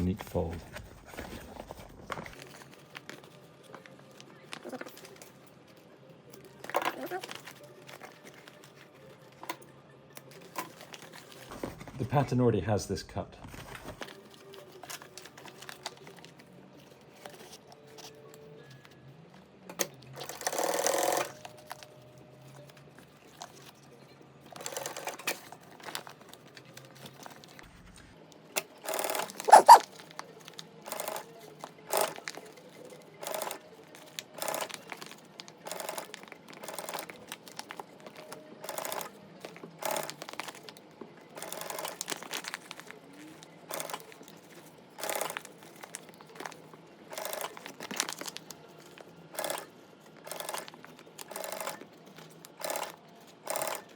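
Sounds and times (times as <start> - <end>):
fabric crinkling and stitching: 0.0 - 5.3, 29.0 - 29.9.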